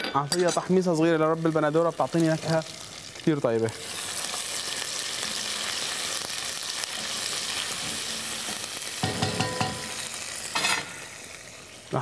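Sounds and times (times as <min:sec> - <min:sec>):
food sizzling in a pot: 0:00.2 - 0:12.0
spoon knocking against a pot: 0:09.0 - 0:10.0.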